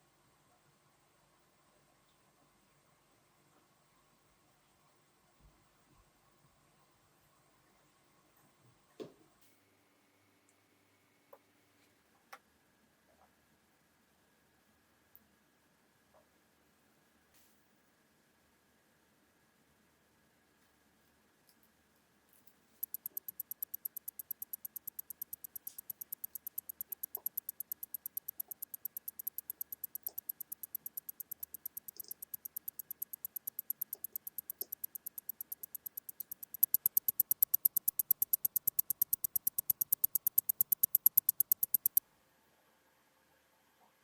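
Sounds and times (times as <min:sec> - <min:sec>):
watch ticking: 0:22.8 - 0:42.0.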